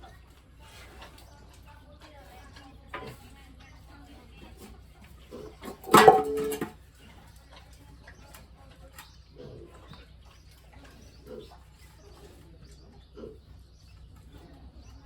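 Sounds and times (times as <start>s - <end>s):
faint low animal calls: 7.0s - 15.0s.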